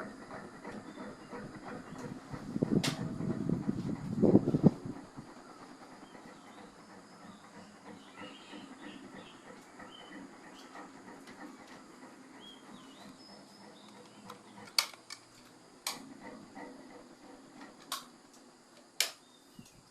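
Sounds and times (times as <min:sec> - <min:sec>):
electric fan motor humming: 0:00.0 - 0:19.9
sharp clicks: 0:13.9 - 0:16.1, 0:17.8 - 0:19.8.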